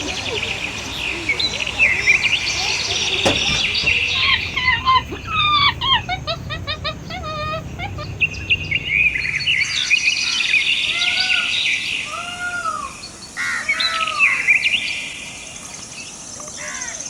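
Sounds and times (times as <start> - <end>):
birds chirping: 0.0 - 9.8.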